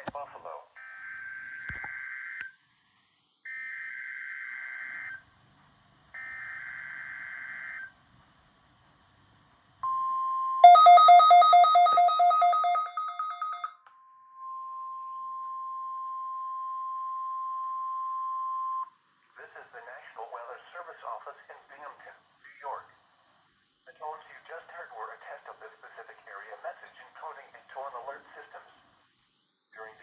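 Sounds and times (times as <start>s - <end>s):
steady warning alarm tone: 9.8s - 13.8s
rapid two-pitch beeping: 9.9s - 13.7s.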